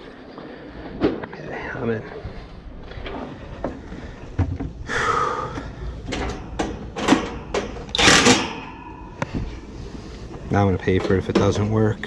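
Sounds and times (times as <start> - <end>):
sheet metal scraping: 5.9 - 10.3
sheet metal knocks and clanks: 6.1 - 9.7.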